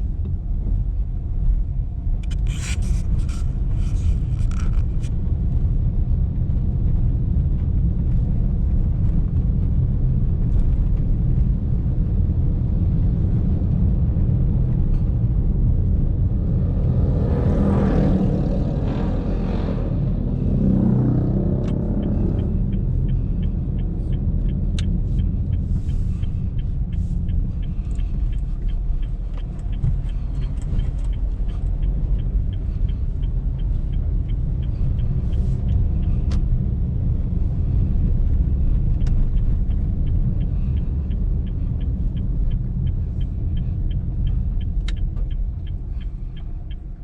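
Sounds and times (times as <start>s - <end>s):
car engine and road rumble: 0.0s - 47.0s
light regular ticking: 19.9s - 47.0s.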